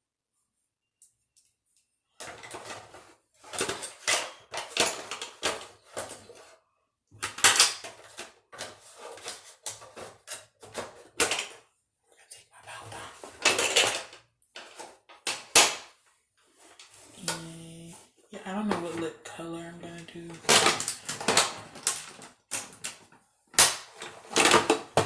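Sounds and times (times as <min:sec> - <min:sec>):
plastic compacts and bottles clattering: 0:02.2 - 0:06.6, 0:07.2 - 0:11.7, 0:13.0 - 0:15.9, 0:19.9 - 0:25.0.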